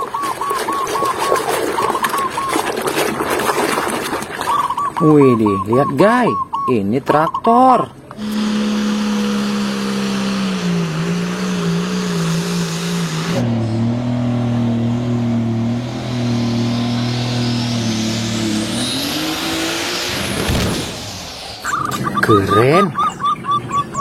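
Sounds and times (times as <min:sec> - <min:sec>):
engine running: 0:08.0 - 0:24.0
vehicle passing: 0:08.2 - 0:23.9.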